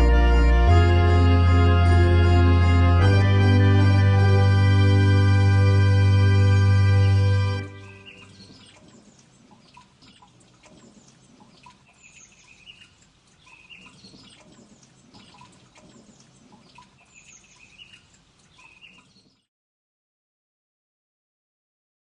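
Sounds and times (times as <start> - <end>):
faint birds chirping: 7.7 - 19.5.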